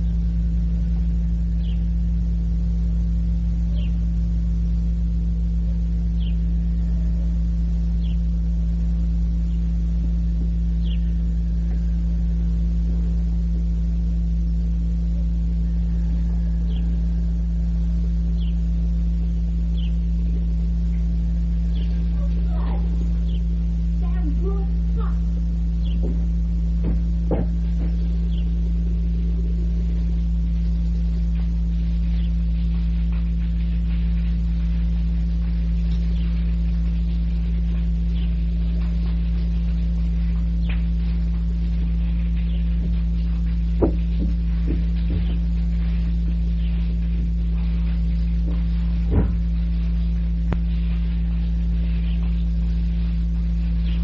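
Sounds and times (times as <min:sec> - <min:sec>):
electrical mains hum: 0:00.0 - 0:54.0
faint short knocks: 0:26.0 - 0:28.0.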